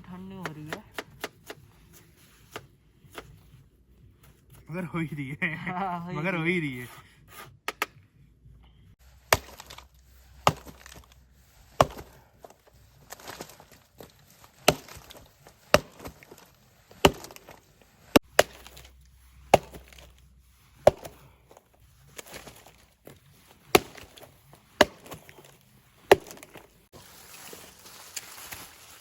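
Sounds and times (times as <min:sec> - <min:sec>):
blade chopping strikes: 0:09.2 - 0:11.1, 0:11.8 - 0:12.2, 0:14.6 - 0:16.3, 0:16.9 - 0:18.9, 0:19.5 - 0:20.2, 0:20.8 - 0:21.2, 0:23.7 - 0:25.5, 0:26.1 - 0:26.7.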